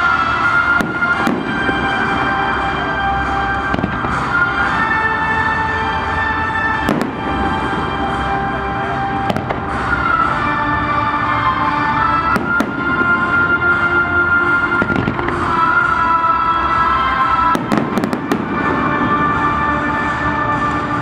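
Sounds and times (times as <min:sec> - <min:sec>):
fireworks bangs: 0:00.0 - 0:21.0
fireworks crackling: 0:00.0 - 0:21.0.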